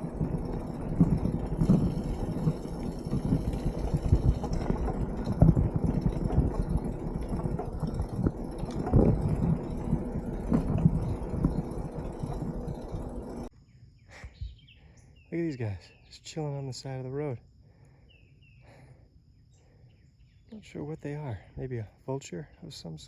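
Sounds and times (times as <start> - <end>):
bicycle knocks and rattles: 0.0 - 13.5
bicycle tyres rumbling on rough road: 0.0 - 13.5.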